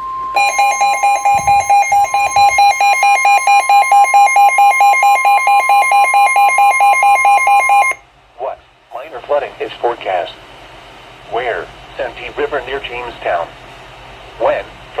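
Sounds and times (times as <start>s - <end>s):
steady alarm tone: 0.0s - 8.0s
rapid pulsing alert beeps: 0.4s - 8.0s.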